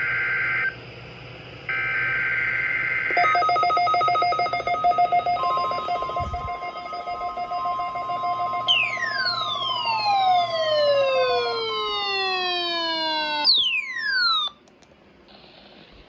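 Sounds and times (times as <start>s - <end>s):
high warning alarm tone: 3.1s - 14.6s
low pulsing tone: 3.2s - 12.9s
falling pitch glide: 4.4s - 14.2s.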